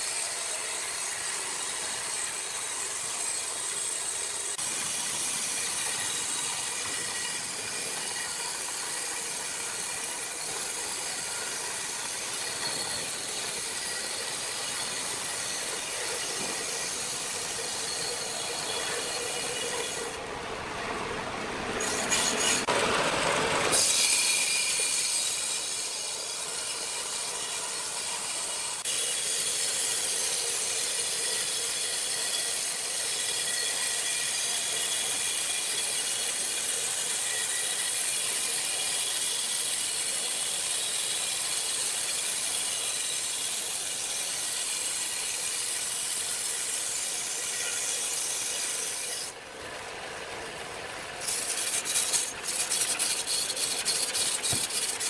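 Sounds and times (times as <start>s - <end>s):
wood rasping hiss: 51.2s - 55.0s.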